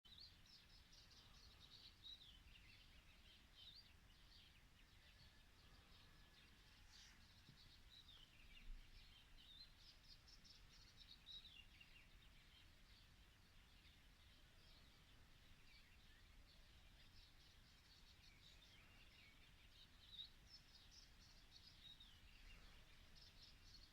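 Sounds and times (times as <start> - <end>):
small songbirds chirping: 0.0 - 23.9.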